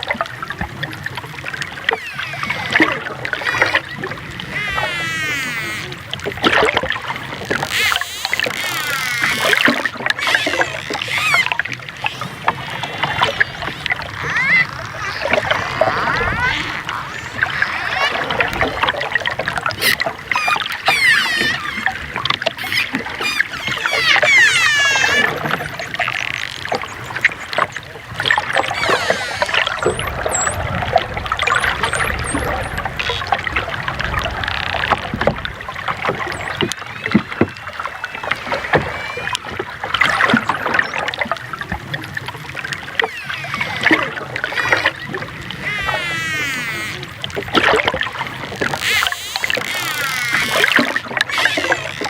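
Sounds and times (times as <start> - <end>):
underwater water rush: 0.0 - 52.0
dolphin whistles: 1.8 - 3.9, 10.2 - 18.9, 19.8 - 22.0, 22.6 - 26.1, 28.4 - 30.8, 45.6 - 47.1
dolphin clicks: 7.2 - 19.0, 19.7 - 30.6, 43.0 - 52.0.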